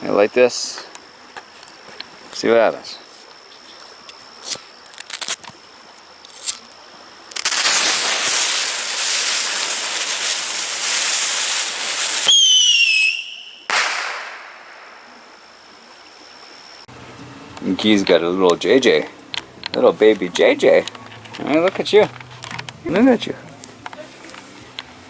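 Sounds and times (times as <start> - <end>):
firework crackles: 4.8 - 5.4, 7.3 - 15.4
firework hissing spray: 7.3 - 15.0
firework whistle: 7.4 - 15.4.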